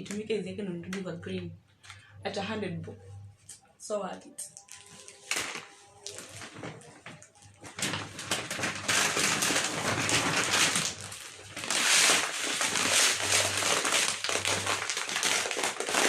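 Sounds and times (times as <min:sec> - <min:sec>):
packaging crackling and rustling: 0:04.5 - 0:16.0.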